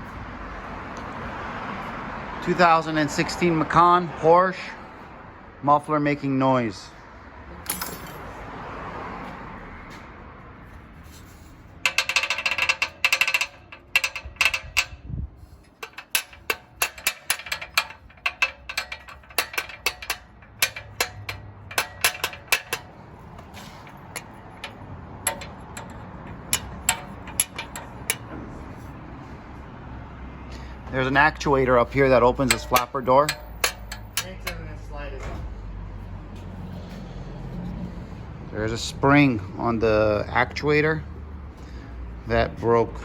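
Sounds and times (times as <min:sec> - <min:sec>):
muffler rattling and clinking: 0:07.6 - 0:08.4, 0:11.0 - 0:29.4, 0:31.0 - 0:35.6
sharp metal clicks: 0:11.8 - 0:28.9, 0:31.3 - 0:35.4.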